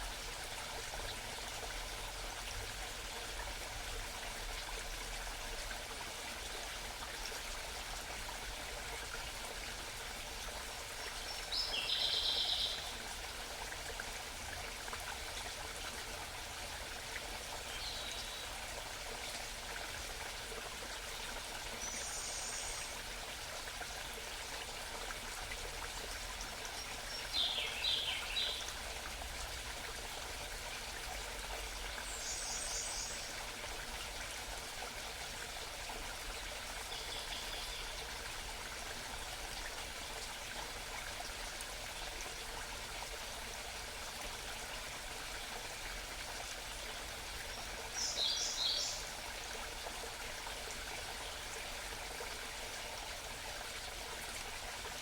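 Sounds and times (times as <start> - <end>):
stream babbling: 0.0 - 55.0
songbirds calling: 26.9 - 28.7, 47.5 - 49.1.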